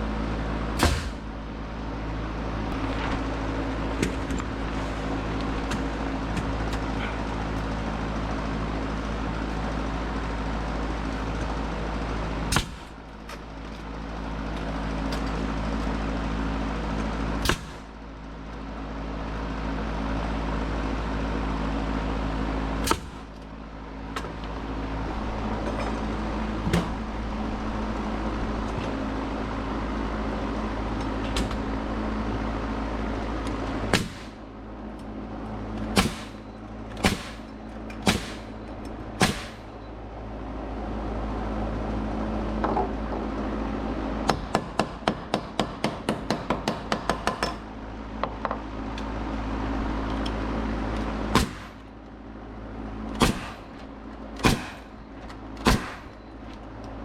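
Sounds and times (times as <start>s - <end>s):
steady mechanical hum: 0.0s - 57.0s
nails driven into wood: 0.8s - 1.2s, 33.9s - 34.4s, 36.0s - 36.4s, 37.0s - 38.5s, 39.2s - 39.7s, 51.4s - 51.8s, 53.2s - 53.7s, 54.4s - 54.9s, 55.6s - 56.2s.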